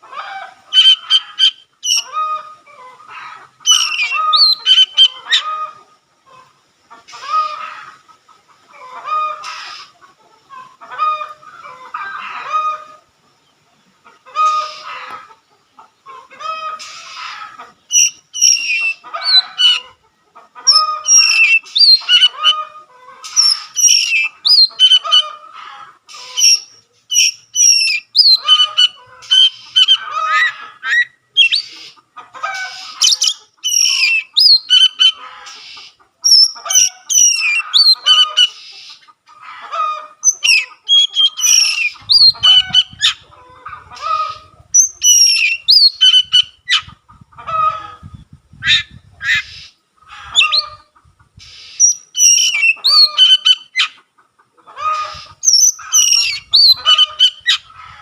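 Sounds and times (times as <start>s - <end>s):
magpie-robin singing: 0.7s - 2.1s, 3.7s - 5.4s, 17.9s - 19.8s, 20.7s - 22.6s, 23.3s - 25.2s, 26.1s - 30.0s, 30.9s - 31.9s, 32.7s - 38.9s, 40.2s - 43.2s, 44.8s - 46.8s, 50.3s - 50.8s, 51.5s - 53.9s, 55.3s - 57.6s.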